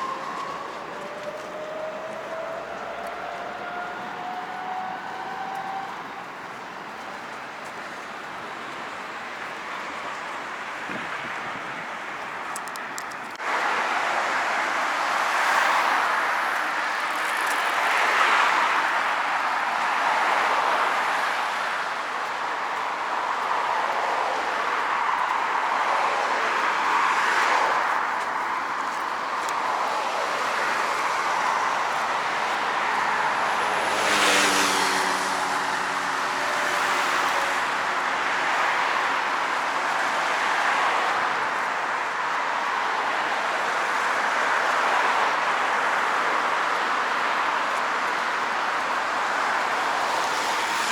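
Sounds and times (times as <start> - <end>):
cars passing: 0.0 - 50.9
loud vehicle passing: 28.8 - 41.1, 48.4 - 50.9.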